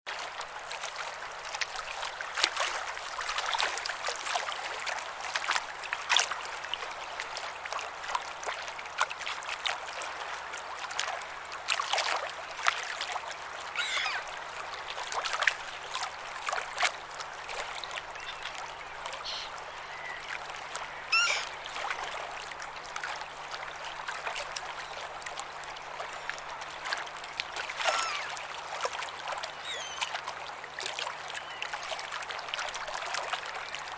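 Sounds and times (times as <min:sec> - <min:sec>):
sea water lapping at shore: 0:00.1 - 0:33.9
bird calling: 0:13.8 - 0:14.3, 0:17.7 - 0:21.7, 0:27.8 - 0:28.4, 0:29.6 - 0:30.2.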